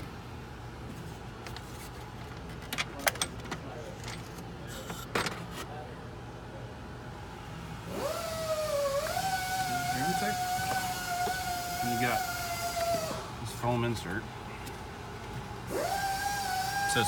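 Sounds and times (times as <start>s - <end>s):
steady low hum: 0.0s - 17.0s
clicks and clinks of parts: 1.4s - 5.7s.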